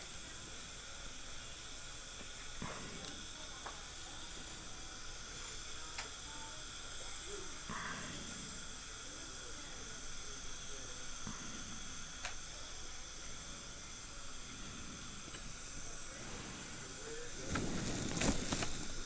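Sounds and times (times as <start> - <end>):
dental drill whining: 0.0 - 19.0
dental suction hiss: 0.0 - 19.0
faint clicks: 5.9 - 6.2, 12.2 - 12.4.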